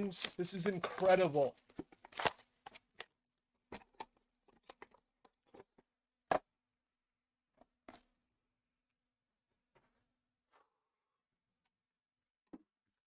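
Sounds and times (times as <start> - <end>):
cards clicking and rustling: 0.0 - 2.8.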